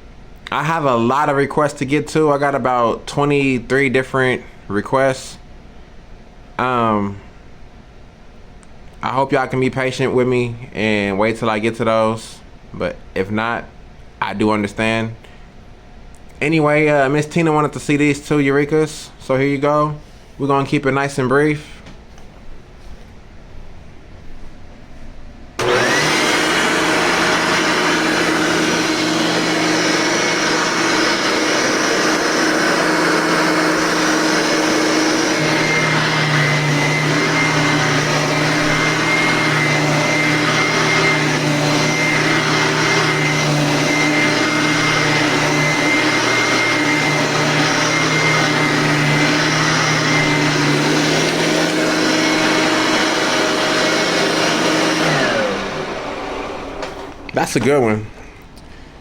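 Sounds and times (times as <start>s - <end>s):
vacuum cleaner running: 25.6s - 57.8s.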